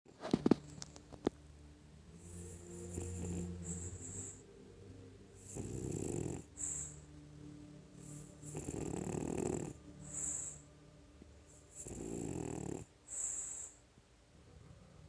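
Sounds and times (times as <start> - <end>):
dog snoring: 2.2 - 4.4, 5.4 - 7.1, 8.0 - 10.6, 11.5 - 13.8.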